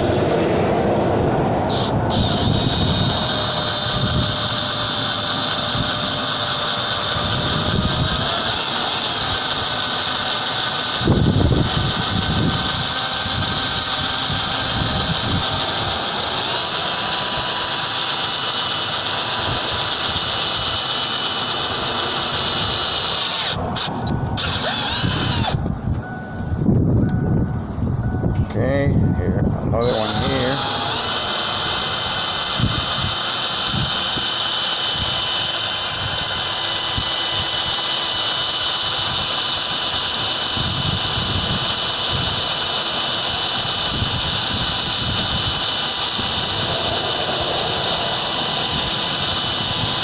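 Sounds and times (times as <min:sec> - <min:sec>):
power drill whining through plastic: 0:01.7 - 0:25.6, 0:29.8 - 0:50.0.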